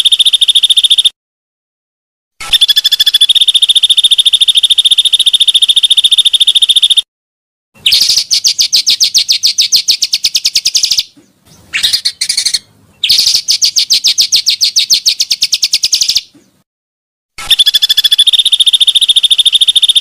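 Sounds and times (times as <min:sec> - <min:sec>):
bird trilling high chirps: 0:02.4 - 0:07.0, 0:07.8 - 0:16.6, 0:17.4 - 0:20.0.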